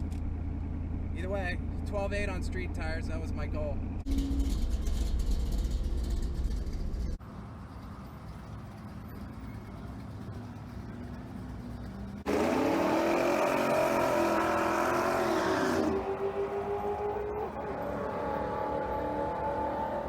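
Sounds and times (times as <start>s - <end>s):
truck engine revving at full throttle: 12.0s - 20.0s.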